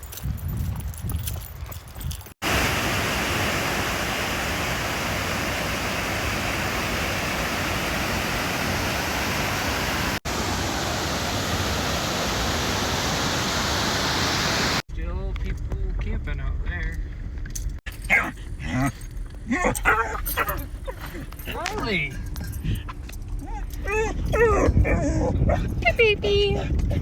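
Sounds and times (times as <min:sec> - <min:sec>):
fast-flowing river rushing: 0:02.4 - 0:14.8.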